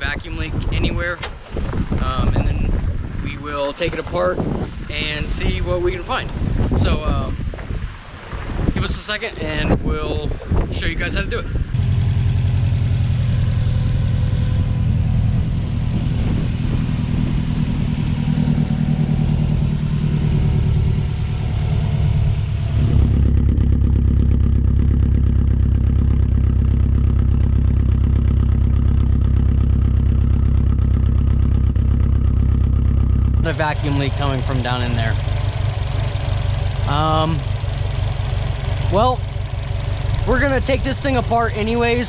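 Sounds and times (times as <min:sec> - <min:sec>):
car engine idling: 0:11.7 - 0:42.0.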